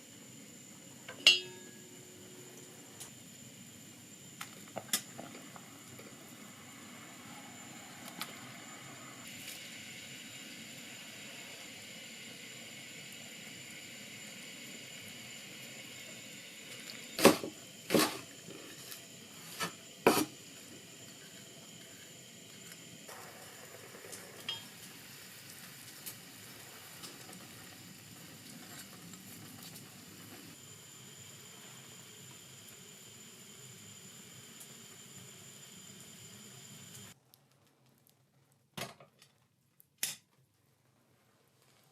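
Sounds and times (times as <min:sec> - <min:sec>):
cookware and utensils clinking: 0:01.1 - 0:01.8
food sizzling in a pan: 0:04.5 - 0:37.2.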